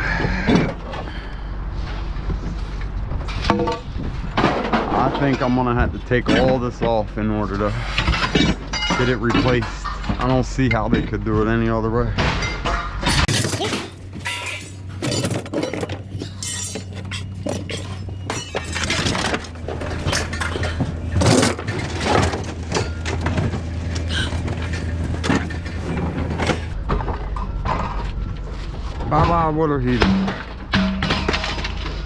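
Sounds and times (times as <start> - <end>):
scrap metal banging and crashing: 1.8 - 32.0.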